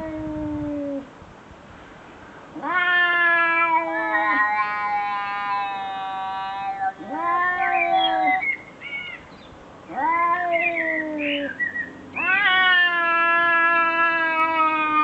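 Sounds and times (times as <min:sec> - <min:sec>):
animal long drawn-out cries: 0:02.6 - 0:08.4, 0:09.9 - 0:11.6, 0:12.2 - 0:15.0.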